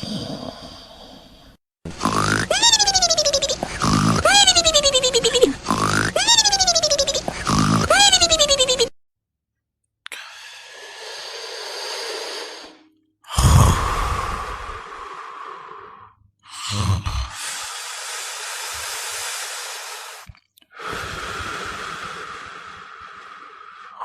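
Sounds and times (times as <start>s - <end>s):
person snoring: 1.9s - 8.9s, 10.2s - 24.0s
breathy exhale: 10.1s - 24.0s.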